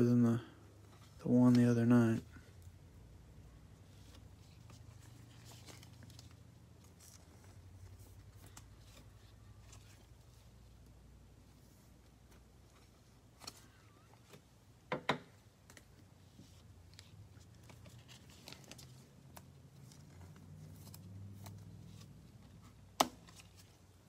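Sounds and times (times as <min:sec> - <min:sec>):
cards rustling: 0:03.8 - 0:14.6, 0:15.5 - 0:24.0.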